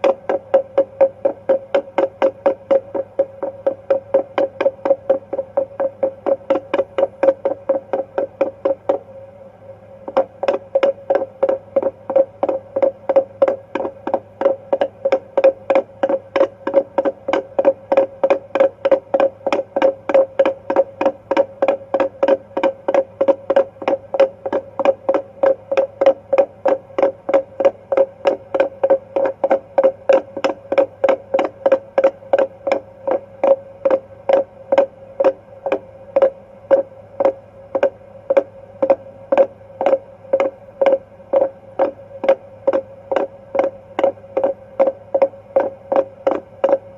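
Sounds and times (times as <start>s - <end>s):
steady hum: 0.0s - 46.9s.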